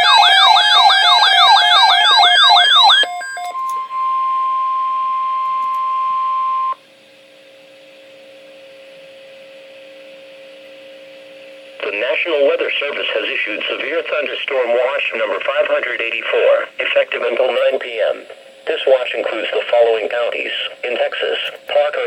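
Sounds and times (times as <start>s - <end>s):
electronic siren sweeping upward: 0.0s - 4.5s
faint radio hiss and hum: 11.8s - 22.0s.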